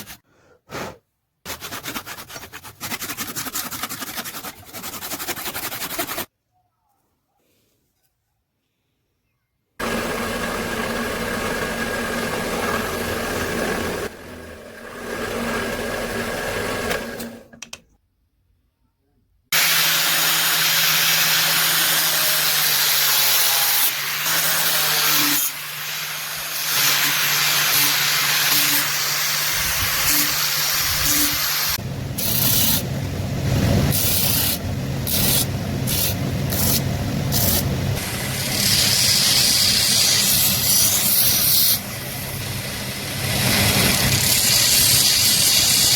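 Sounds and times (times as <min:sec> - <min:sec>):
motor hum: 0:09.8 - 0:17.5
power tool grinding: 0:09.8 - 0:17.5, 0:19.6 - 0:33.0, 0:33.8 - 0:45.9.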